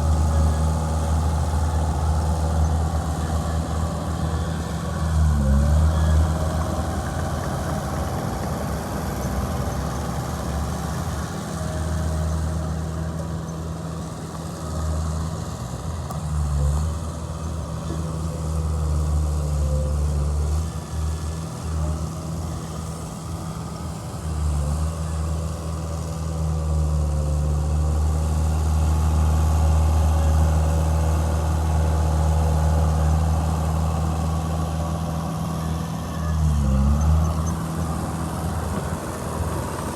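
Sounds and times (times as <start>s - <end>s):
diesel engine drone: 0.0s - 39.9s.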